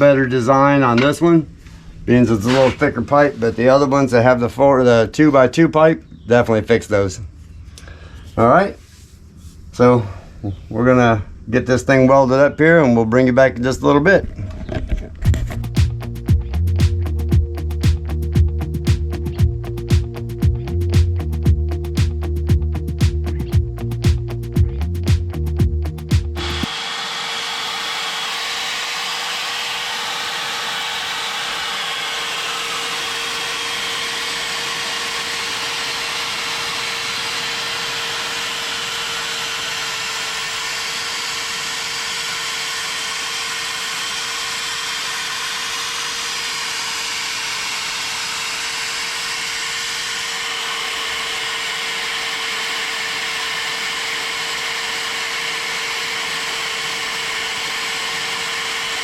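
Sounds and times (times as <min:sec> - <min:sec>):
power tool running with steady hiss: 0:26.0 - 0:59.0.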